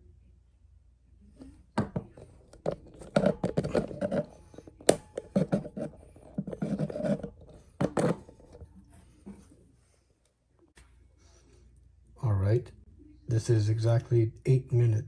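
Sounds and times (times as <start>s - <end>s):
rubbing and scraping handling noises: 1.3s - 11.5s.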